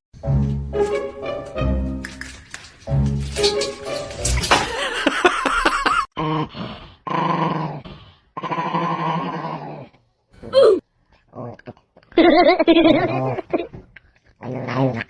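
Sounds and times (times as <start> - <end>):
dog growling and whining: 7.1 - 10.8.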